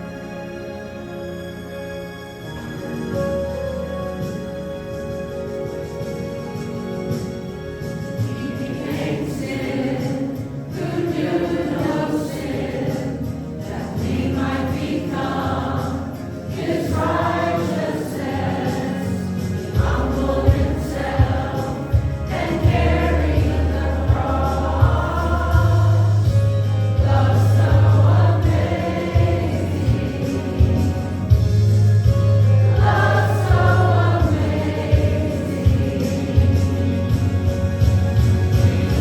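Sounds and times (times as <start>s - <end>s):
instrumental accompaniment: 0.0s - 39.0s
group singing worship song: 8.3s - 31.7s, 32.7s - 37.4s, 38.5s - 39.0s.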